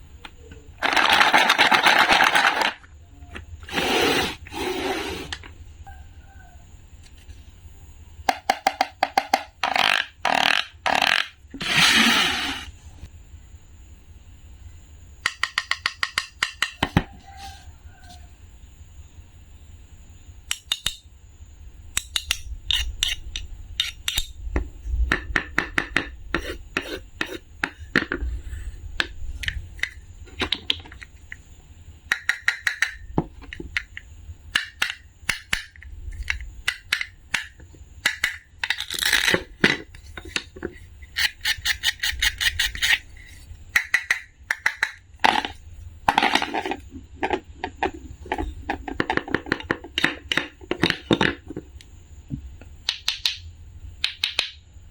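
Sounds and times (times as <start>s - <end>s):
faint high whine: 11.3s - 15.2s
small hard objects clicking: 43.7s - 51.3s, 52.8s - 54.6s.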